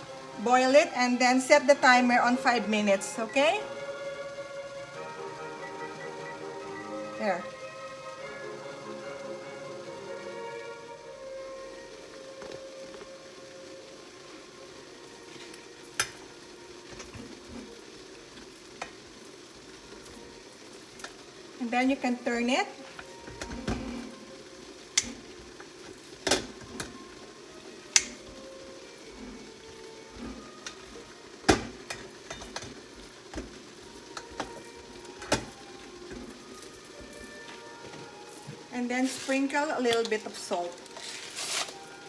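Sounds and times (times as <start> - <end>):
water boiling in a pot: 0.0 - 42.0
corn cobs knocking against pot: 23.0 - 24.2, 26.2 - 27.0, 27.9 - 28.4, 30.2 - 38.2.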